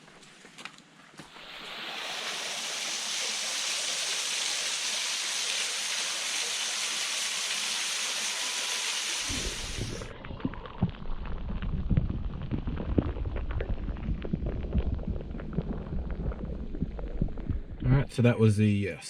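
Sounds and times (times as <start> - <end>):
low rumble: 9.6 - 18.1.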